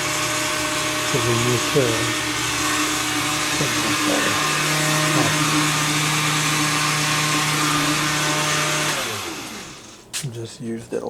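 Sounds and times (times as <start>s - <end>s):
coffee maker whirring: 0.0s - 10.1s.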